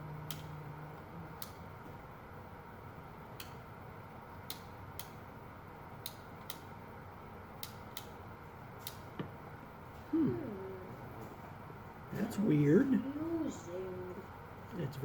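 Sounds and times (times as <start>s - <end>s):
person's gliding voiced sound: 10.1s - 11.1s, 12.7s - 14.3s.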